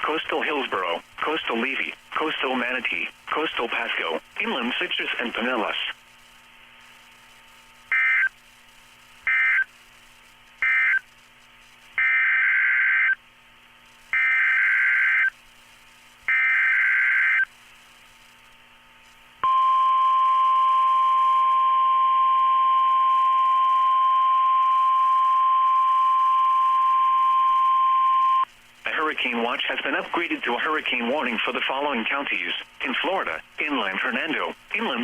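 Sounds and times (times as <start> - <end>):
single-pitch warning alarm tone: 9.3 - 9.7.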